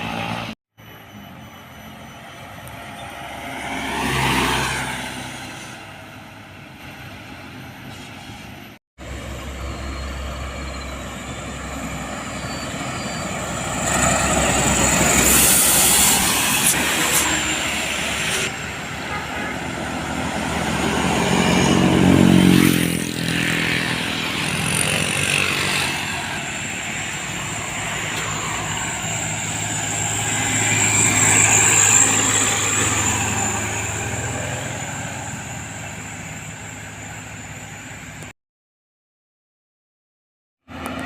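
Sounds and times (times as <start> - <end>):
road traffic passing: 0.0 - 38.3, 40.7 - 41.0.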